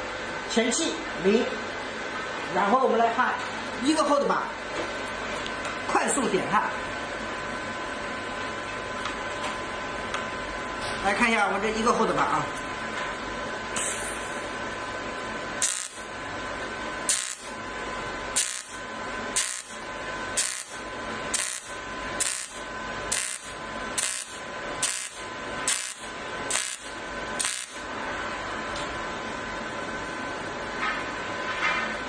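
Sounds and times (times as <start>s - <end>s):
welder high whine: 13.4s - 29.3s
welding arc bursts: 15.6s - 16.1s, 17.0s - 17.6s, 18.3s - 27.9s.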